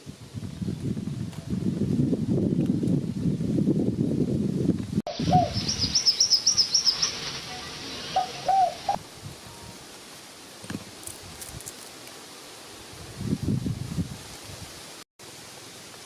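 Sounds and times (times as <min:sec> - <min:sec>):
high bird chirps: 0:05.1 - 0:09.0
low cooing bird calls: 0:05.1 - 0:09.0
rustling: 0:09.3 - 0:12.9.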